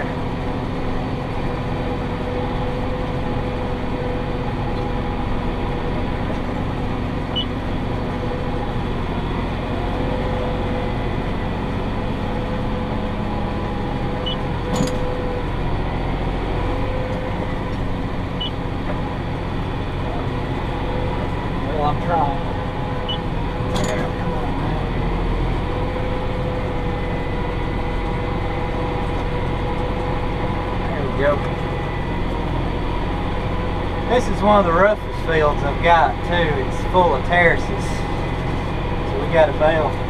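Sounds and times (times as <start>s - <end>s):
tractor engine running: 0.0s - 40.0s.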